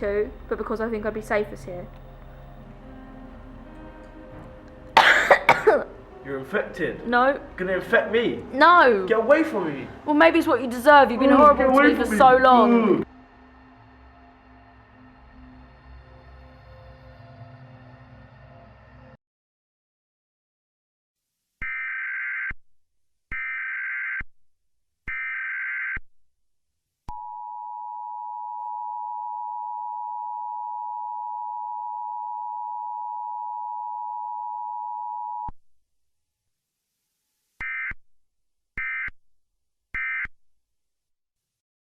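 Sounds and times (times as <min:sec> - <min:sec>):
steady low tone: 0:00.0 - 0:19.2.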